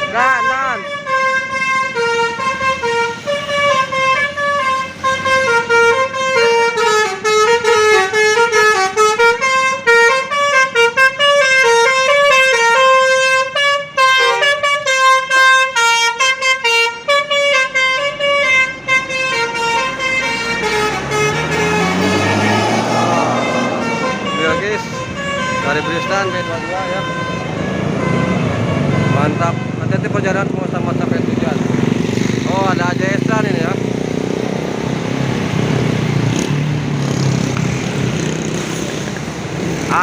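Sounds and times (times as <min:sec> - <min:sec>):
bus multi-tone horn tune: 0:00.0 - 0:29.9.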